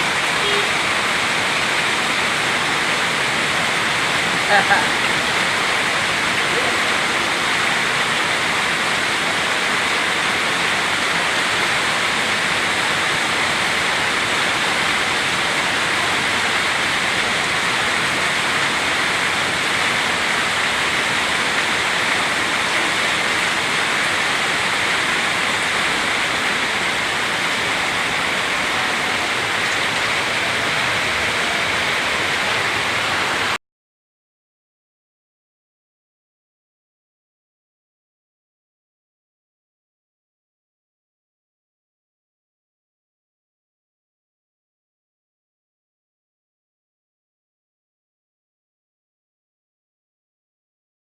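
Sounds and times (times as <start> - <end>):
floodwater rushing: 0.0 - 33.6.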